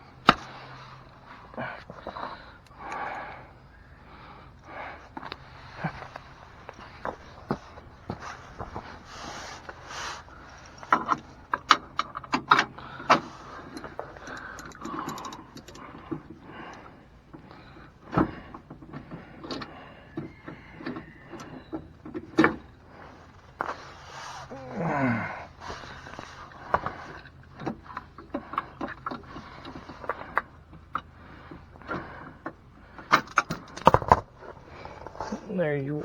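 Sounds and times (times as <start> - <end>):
metallic clicks of hand tools: 10.9 - 16.1.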